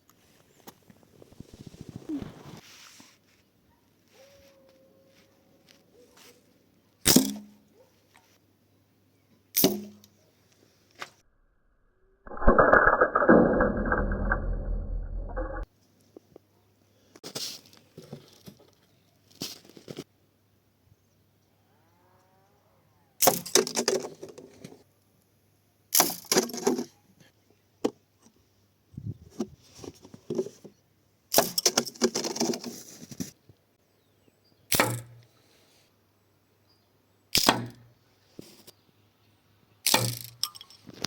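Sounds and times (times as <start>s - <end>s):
crossbow shot crack: 9.6s - 10.0s, 34.7s - 35.2s, 37.4s - 37.9s, 39.8s - 40.4s.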